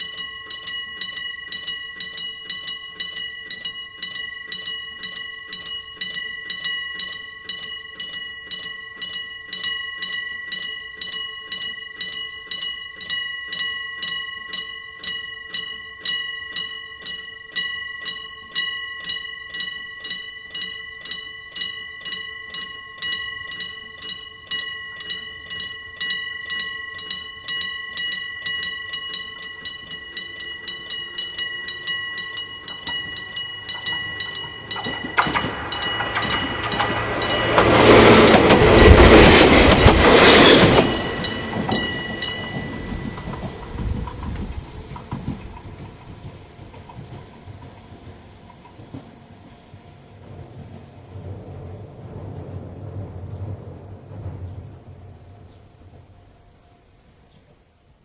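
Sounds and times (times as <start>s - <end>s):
level crossing bell ringing rapidly: 0.0s - 44.0s.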